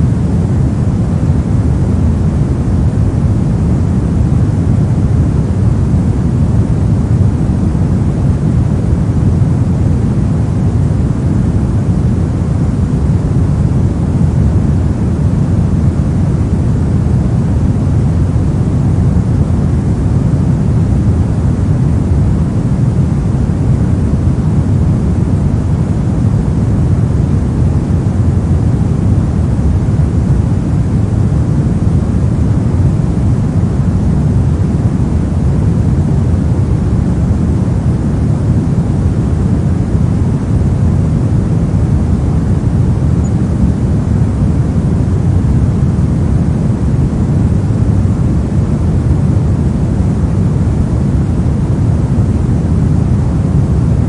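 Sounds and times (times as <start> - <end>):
steady pink noise hiss: 0.0 - 54.0.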